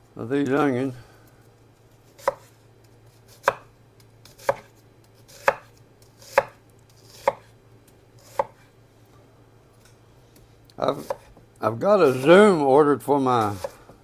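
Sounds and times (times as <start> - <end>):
knife chopping onions: 2.1 - 7.5, 8.2 - 8.7, 10.9 - 11.4, 12.0 - 12.6, 13.3 - 14.0.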